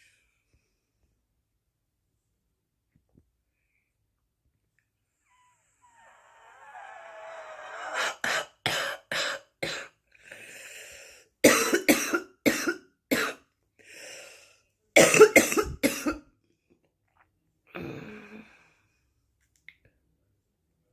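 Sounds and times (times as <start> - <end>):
gasping breath: 5.3 - 8.4
woman coughing harshly: 8.1 - 10.0, 11.4 - 13.4, 15.0 - 16.2.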